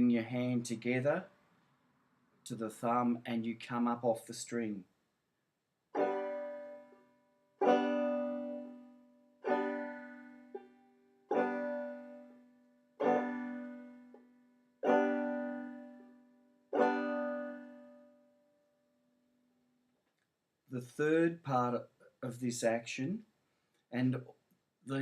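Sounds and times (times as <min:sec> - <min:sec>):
banjo strums ringing: 0:06.0 - 0:07.0, 0:07.6 - 0:08.8, 0:09.4 - 0:10.7, 0:11.3 - 0:12.3, 0:13.0 - 0:14.2, 0:14.8 - 0:16.0, 0:16.8 - 0:17.9.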